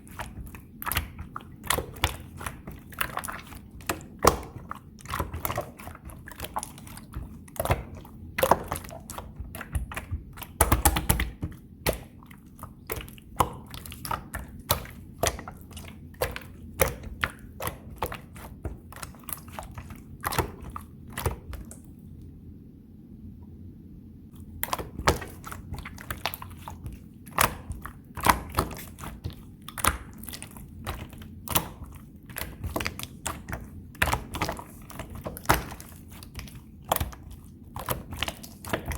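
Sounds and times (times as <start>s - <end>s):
slime clicking and popping: 0.8s - 12.2s.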